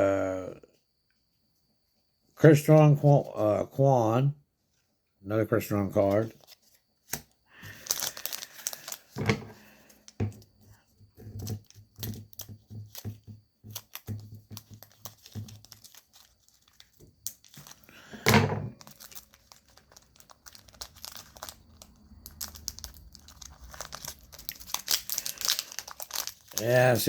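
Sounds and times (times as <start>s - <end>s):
cards and wrappers crinkling: 5.6s - 27.0s.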